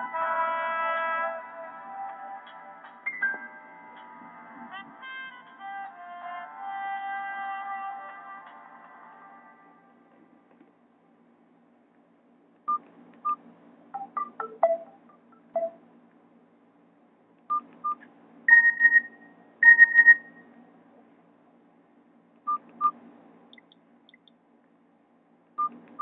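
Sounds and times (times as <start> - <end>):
electronic ringtone beeps: 14.0 - 15.8, 18.5 - 20.4.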